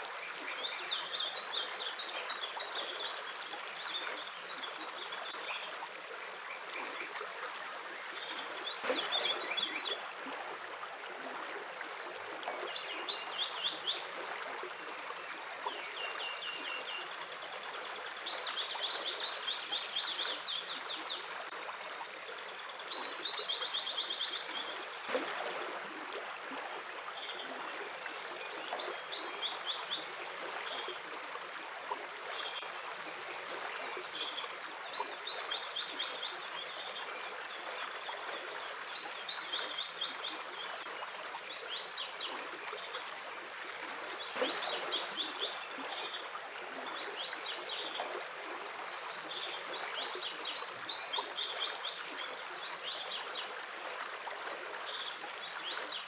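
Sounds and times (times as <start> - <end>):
stream running: 0.0 - 56.0.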